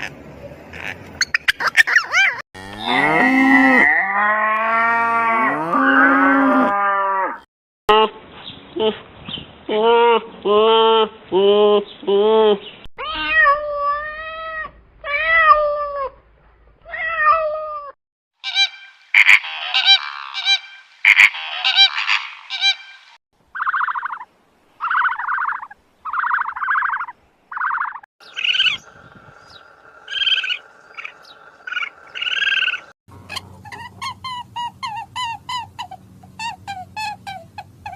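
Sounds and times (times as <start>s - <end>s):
animal calls: 18.4s - 23.0s, 23.6s - 37.9s.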